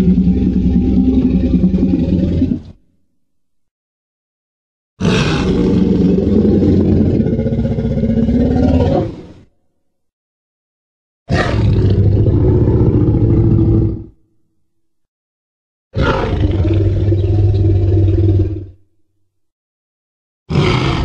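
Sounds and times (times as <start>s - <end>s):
deep monster roars: 0.0s - 2.8s, 5.0s - 9.4s, 11.3s - 14.2s, 16.0s - 18.8s, 20.5s - 21.0s.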